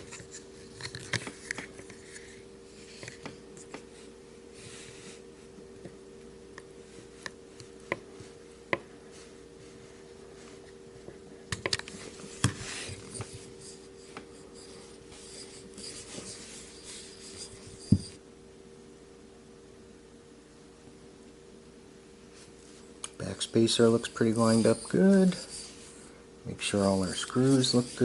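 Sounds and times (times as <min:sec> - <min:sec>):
steady low hum: 0:00.0 - 0:28.0
light rubbing and scraping: 0:12.0 - 0:18.2, 0:23.4 - 0:28.0.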